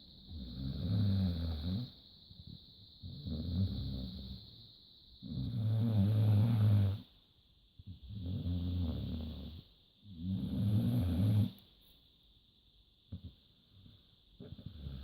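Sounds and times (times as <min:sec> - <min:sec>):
dog snoring: 0:00.3 - 0:04.6, 0:05.2 - 0:07.1, 0:07.8 - 0:11.6, 0:13.8 - 0:15.0.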